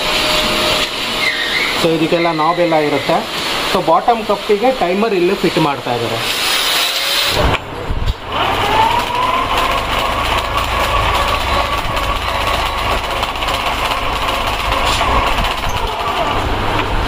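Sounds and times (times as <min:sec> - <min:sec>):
electric motor whine: 0:08.2 - 0:17.0.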